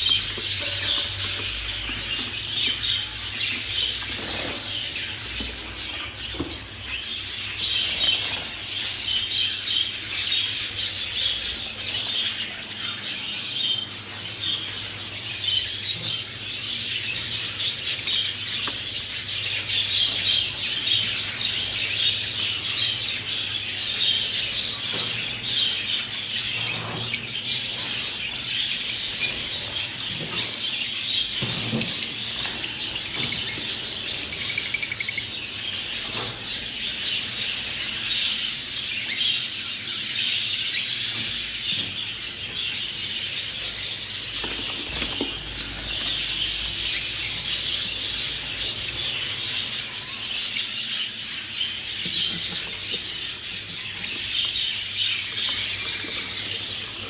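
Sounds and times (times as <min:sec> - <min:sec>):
budgerigars chattering and chirping: 0:00.0 - 0:57.0.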